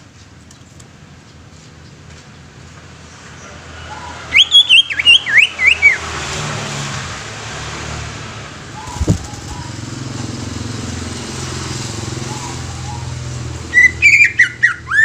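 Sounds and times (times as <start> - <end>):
bird singing whistled notes: 3.8 - 6.0, 8.7 - 9.8, 12.3 - 15.0.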